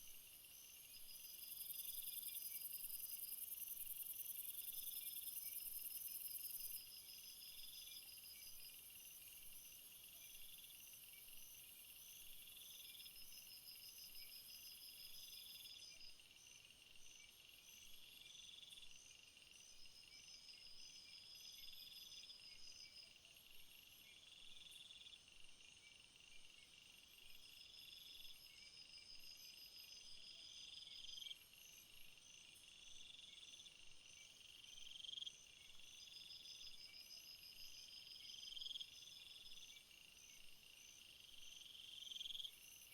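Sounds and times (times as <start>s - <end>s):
insect pulsed trill: 0.0s - 42.9s.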